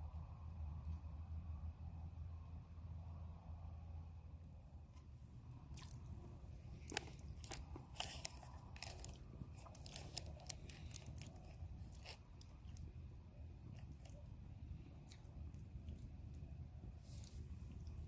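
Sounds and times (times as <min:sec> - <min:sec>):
sharp clicks and crunches: 0:05.7 - 0:13.0, 0:13.6 - 0:14.3
person chewing: 0:05.7 - 0:18.0.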